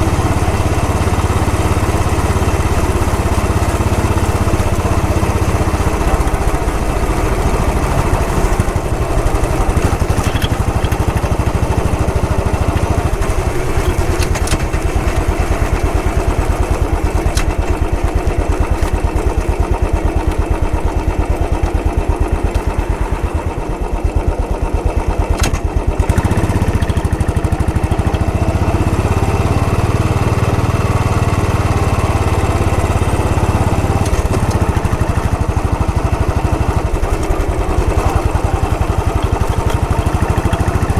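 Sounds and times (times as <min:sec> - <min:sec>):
motorcycle engine running: 0:00.0 - 0:40.9.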